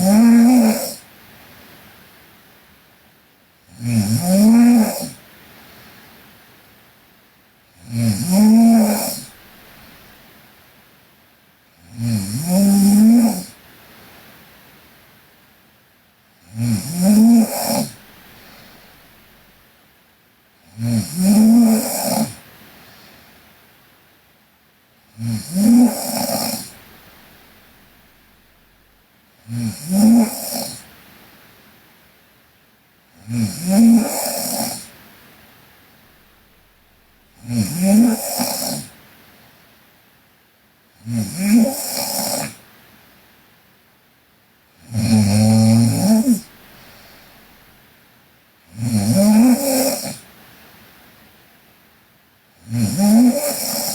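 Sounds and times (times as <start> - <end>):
girl snoring: 0.0 - 1.0, 3.7 - 5.2, 7.8 - 9.4, 11.8 - 13.6, 16.4 - 18.0, 20.6 - 22.4, 25.2 - 26.8, 29.4 - 30.9, 33.2 - 34.9, 37.3 - 38.9, 41.0 - 42.6, 44.8 - 47.4, 48.7 - 50.3, 52.6 - 53.9
quiet breathing: 0.0 - 2.2, 16.3 - 19.9, 20.6 - 24.2, 44.8 - 51.2.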